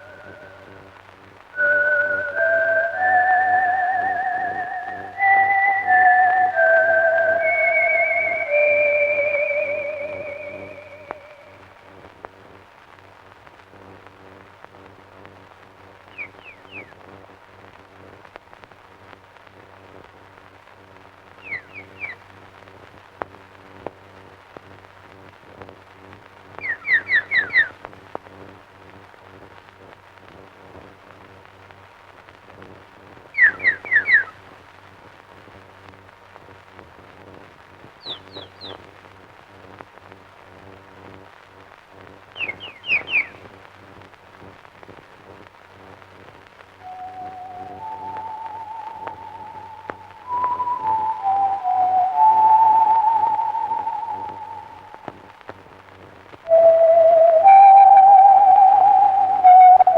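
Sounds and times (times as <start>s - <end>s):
theremin music: 0.0s - 1.0s, 1.6s - 11.7s, 46.8s - 55.4s, 56.5s - 59.9s
low hum and hiss: 0.0s - 59.9s
bird chirping: 16.1s - 16.9s, 21.4s - 22.2s, 26.6s - 27.7s, 33.4s - 34.3s, 38.0s - 38.8s, 42.4s - 43.4s, 46.8s - 55.1s.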